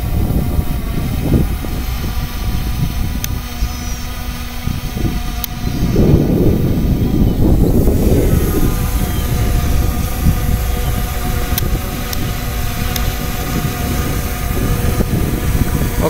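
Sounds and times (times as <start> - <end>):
drone motors whining: 0.0 - 16.0
wind buffeting microphone: 0.0 - 16.0.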